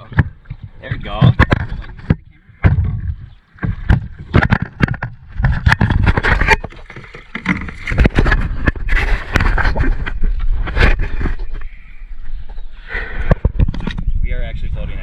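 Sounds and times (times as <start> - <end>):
paddles knocking on plastic hull: 0.0 - 10.2
water splashing: 0.0 - 12.2.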